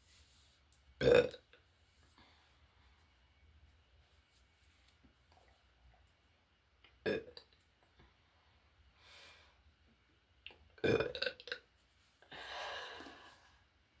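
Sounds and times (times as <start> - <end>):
person burping: 1.0 - 1.6, 7.0 - 7.5, 10.8 - 11.6
breathy rush of air: 12.3 - 13.5.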